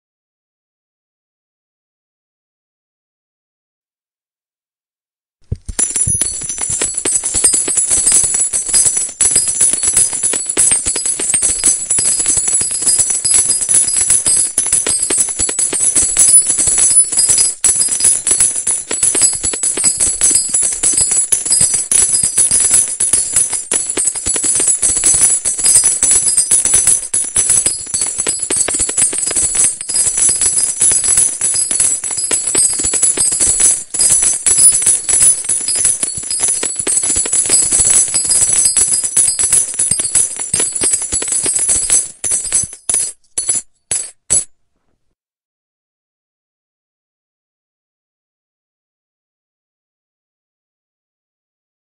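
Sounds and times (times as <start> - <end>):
metal coins pouring and clinking: 5.7 - 44.5.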